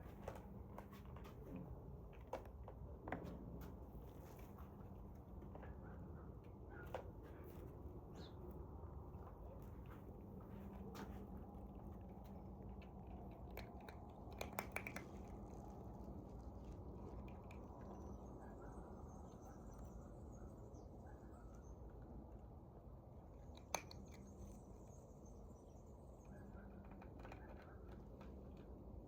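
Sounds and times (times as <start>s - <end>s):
cat chewing: 11.0s - 18.2s.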